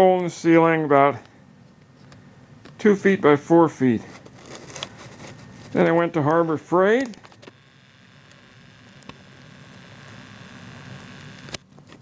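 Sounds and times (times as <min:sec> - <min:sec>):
faint hum and hiss: 0:00.0 - 0:12.0
small clicks: 0:07.0 - 0:12.0.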